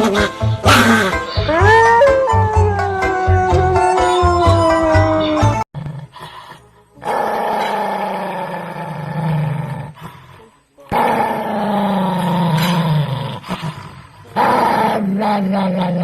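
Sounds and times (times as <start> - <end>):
dog growling: 5.4 - 16.0.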